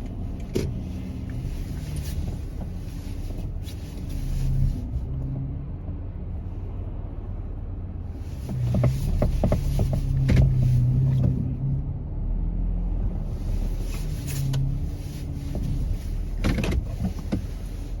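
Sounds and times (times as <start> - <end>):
sharp clicks and knocks: 0.0 - 3.5, 8.4 - 11.5, 15.4 - 17.7
car engine hum: 0.0 - 18.0
car road rumble: 0.0 - 18.0.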